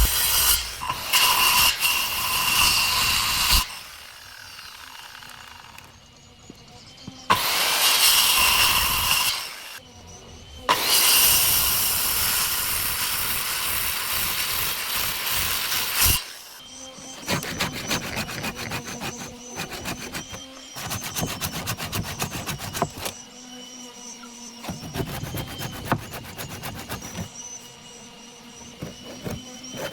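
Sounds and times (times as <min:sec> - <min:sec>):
loud wood cutting noise: 0:00.0 - 0:10.0, 0:10.6 - 0:29.9
rasping strokes on wood: 0:14.0 - 0:23.2, 0:24.6 - 0:27.6, 0:28.6 - 0:29.9.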